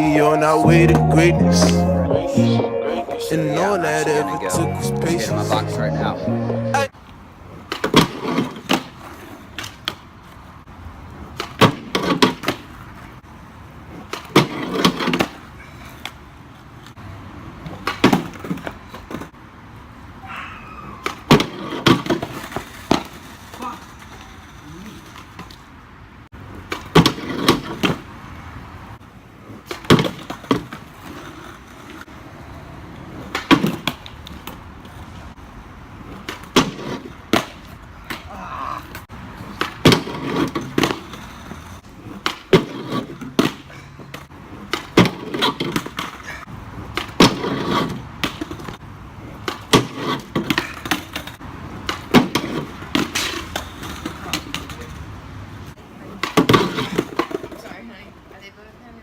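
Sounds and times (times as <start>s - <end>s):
skateboard wheels rolling: 0.0s - 58.5s
skateboard clacking on ground: 7.5s - 10.4s, 11.2s - 13.2s, 13.9s - 17.0s, 17.6s - 19.4s, 20.9s - 25.7s, 26.5s - 28.1s, 29.3s - 32.3s, 32.9s - 35.2s, 36.0s - 55.1s, 55.7s - 58.0s.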